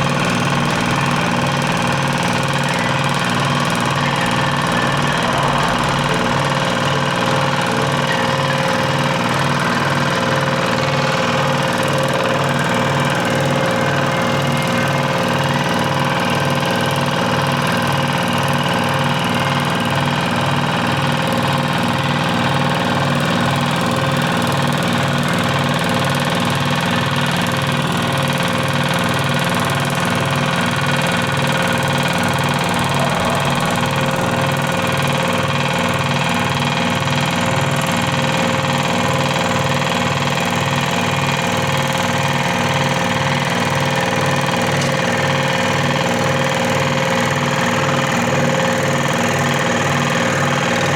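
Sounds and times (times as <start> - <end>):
scroll saw motor hum: 28.8 - 38.0, 41.0 - 47.2.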